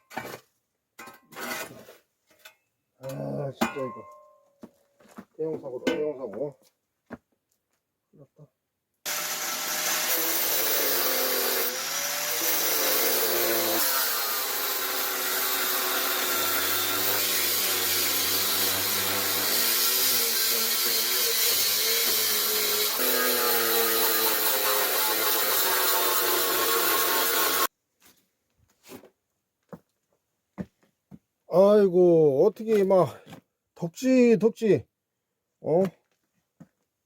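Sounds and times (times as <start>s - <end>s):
angle grinder cutting steel: 9.1s - 27.7s.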